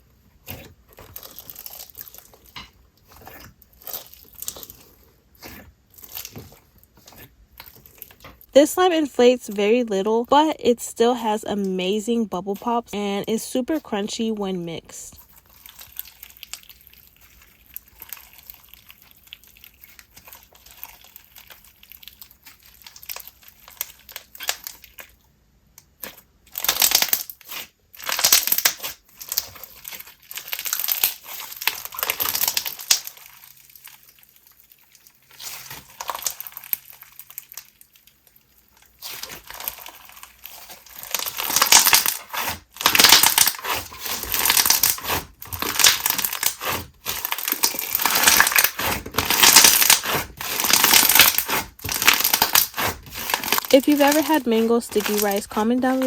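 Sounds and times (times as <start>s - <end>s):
slime squished by hand: 0.4s - 8.5s, 25.8s - 54.3s.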